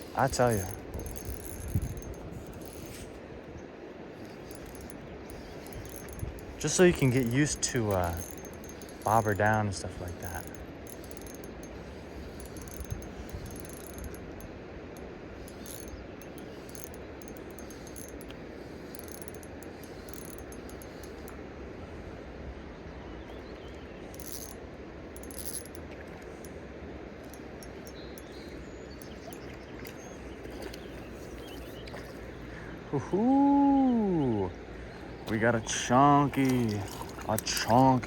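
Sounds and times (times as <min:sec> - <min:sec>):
faint clicks: 0:04.2 - 0:21.4.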